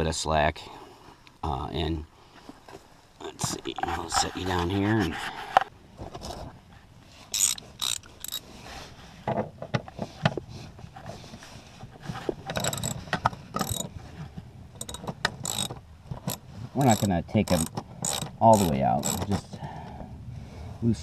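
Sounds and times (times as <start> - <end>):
socket ratchet clicking: 7.3 - 8.4, 12.6 - 13.0, 13.6 - 13.9, 14.8 - 19.4.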